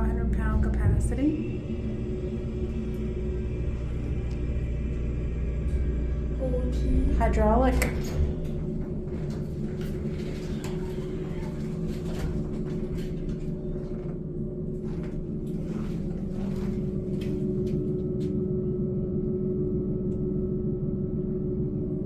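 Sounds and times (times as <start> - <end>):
elevator mechanical hum: 0.0 - 22.0.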